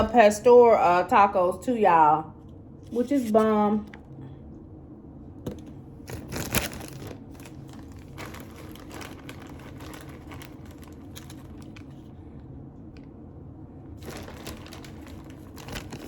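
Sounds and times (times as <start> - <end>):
packaging crinkling and rustling: 5.5 - 12.2, 14.0 - 16.0.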